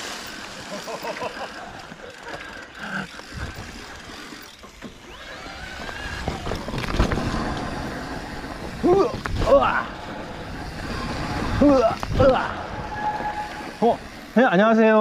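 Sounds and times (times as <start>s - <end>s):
bike clicks and rattles: 0.0s - 14.4s
bike tyres on dirt: 0.0s - 15.0s
low rumbling: 5.1s - 14.4s.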